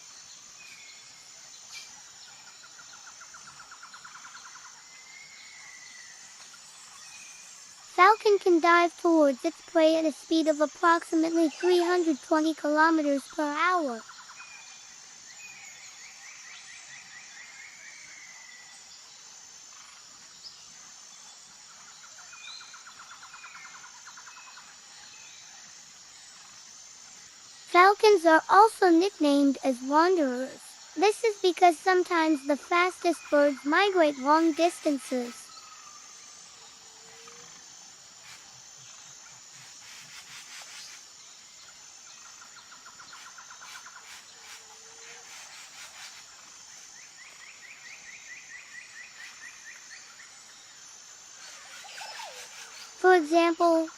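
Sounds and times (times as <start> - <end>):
insects trilling: 0.0 - 53.9
rapid bird trilling: 51.4 - 53.9.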